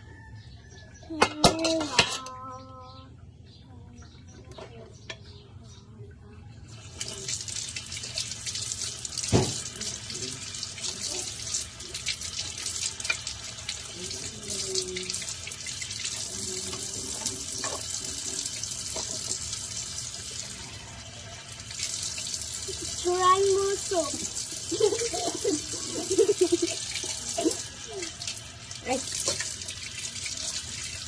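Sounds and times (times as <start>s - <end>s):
dishes clinking and knocking: 1.1s - 2.4s
tap water running into sink: 6.8s - 31.0s.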